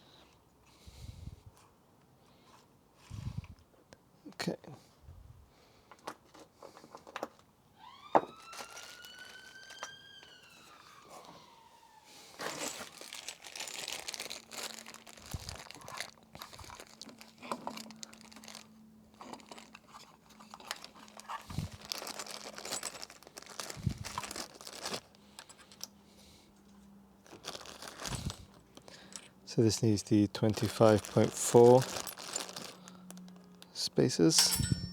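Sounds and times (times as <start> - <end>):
packaging rustling and crinkling: 8.2 - 11.4, 12.2 - 25.9, 27.2 - 33.8.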